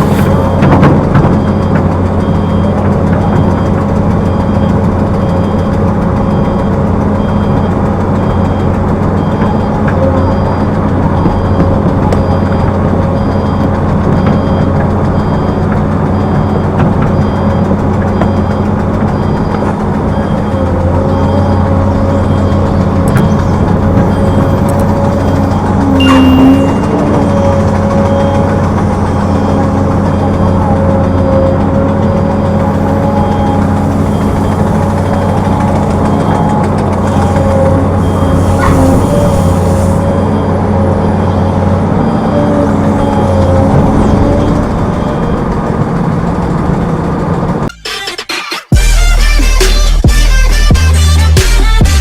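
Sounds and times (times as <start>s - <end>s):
short rising squeal: 0.0s - 0.7s, 22.3s - 30.7s, 37.2s - 40.5s
backup alarm beeping: 0.0s - 47.7s
diesel machinery engine running: 0.0s - 52.0s.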